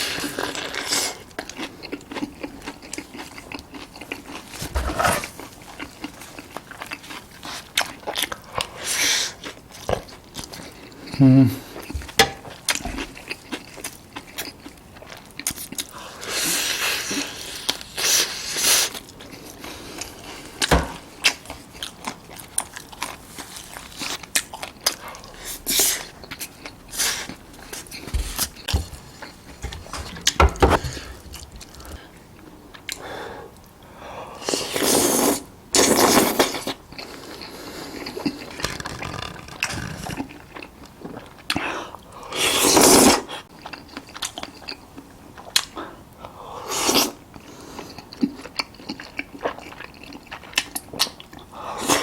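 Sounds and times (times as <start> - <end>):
person chewing food: 0.0 - 33.1, 34.5 - 52.0
crunchy bites: 38.0 - 40.8.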